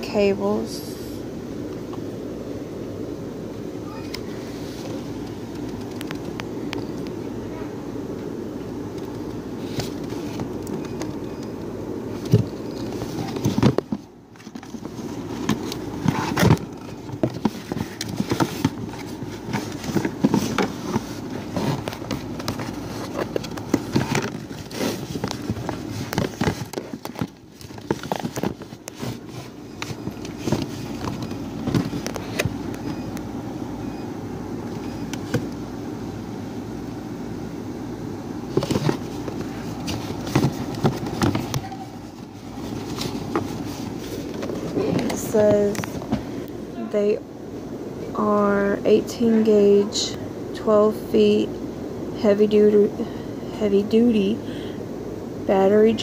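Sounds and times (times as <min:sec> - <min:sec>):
steady low hum: 0:00.0 - 0:56.0
cable handling clicks and rustles: 0:04.0 - 0:07.2, 0:08.1 - 0:33.3, 0:34.6 - 0:35.6, 0:38.5 - 0:46.6.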